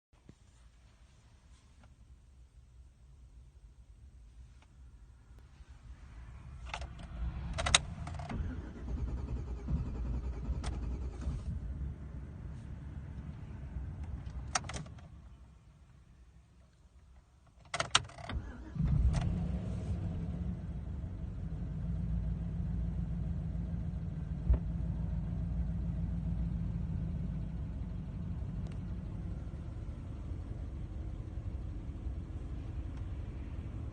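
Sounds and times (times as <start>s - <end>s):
vehicle engine droning: 5.4s - 15.4s, 18.6s - 33.9s.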